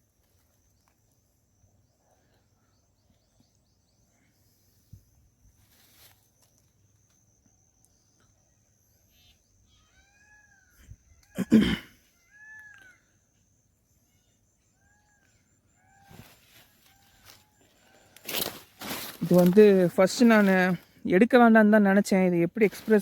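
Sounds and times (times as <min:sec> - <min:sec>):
faint animal calls: 0:08.8 - 0:18.5.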